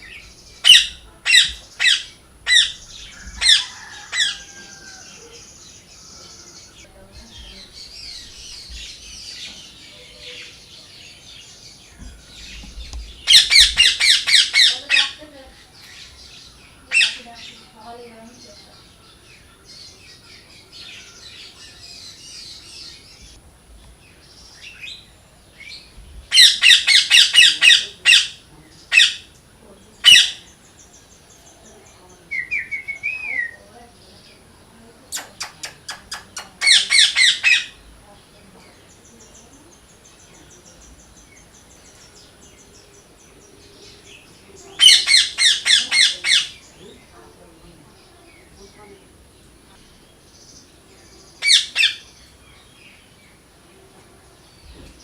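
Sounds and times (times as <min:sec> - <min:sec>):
parrot calling: 0:00.0 - 0:05.6, 0:12.5 - 0:15.2, 0:16.8 - 0:17.7, 0:26.3 - 0:29.4, 0:30.0 - 0:30.4, 0:35.1 - 0:37.9, 0:44.8 - 0:46.8, 0:51.4 - 0:52.1.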